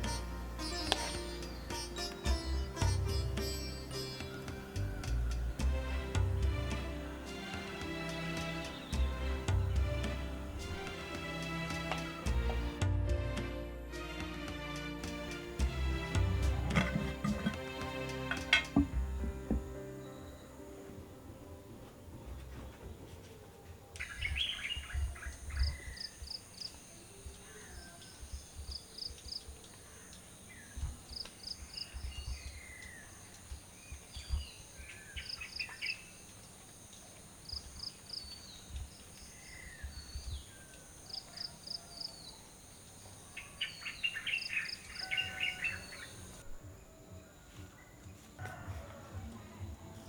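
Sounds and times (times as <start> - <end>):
birds chirping: 0.0 - 10.9, 15.5 - 48.4
low thumps: 15.6 - 19.9.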